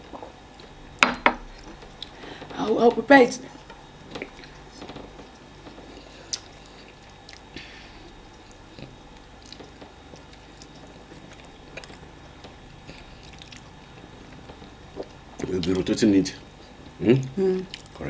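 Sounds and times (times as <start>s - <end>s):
wet chewing sounds: 3.6s - 18.0s.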